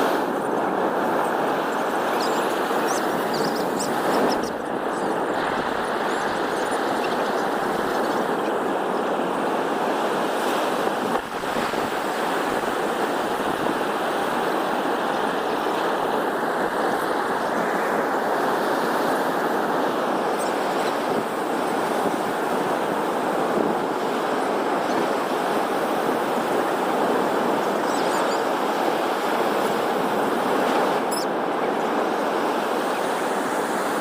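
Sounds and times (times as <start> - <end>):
ocean waves breaking: 0.0 - 34.0.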